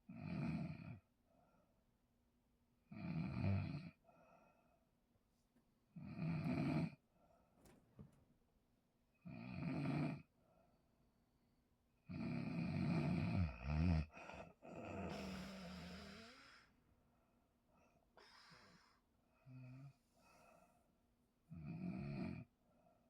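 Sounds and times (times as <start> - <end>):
person snoring: 12.1 - 16.7, 18.2 - 19.0
person breathing out: 15.0 - 16.8, 18.2 - 19.0.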